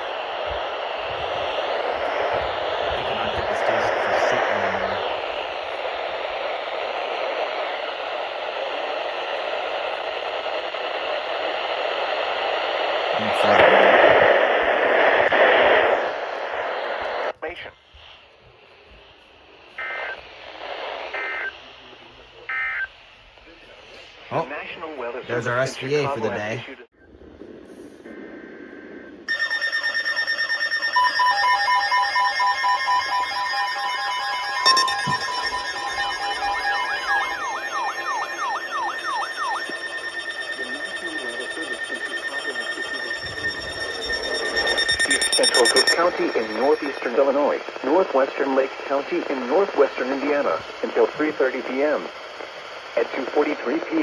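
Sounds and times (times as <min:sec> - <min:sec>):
radio static hiss: 0:00.0 - 0:29.4, 0:34.6 - 0:54.0
pulsing electronic alert tones: 0:29.3 - 0:47.1
two-pitch beeping alarm: 0:29.3 - 0:47.5.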